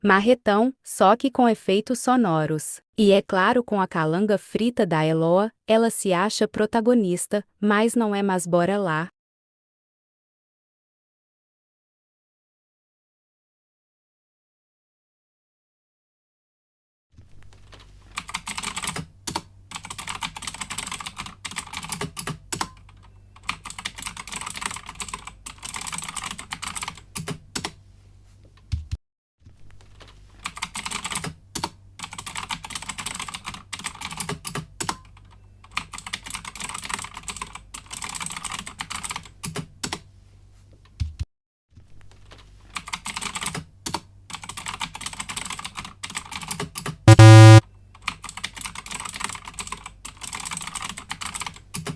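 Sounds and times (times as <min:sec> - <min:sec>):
computer keyboard typing: 0:18.1 - 0:27.8, 0:30.4 - 0:40.0, 0:42.8 - 0:51.9
loud low buzz: 0:47.1 - 0:47.6.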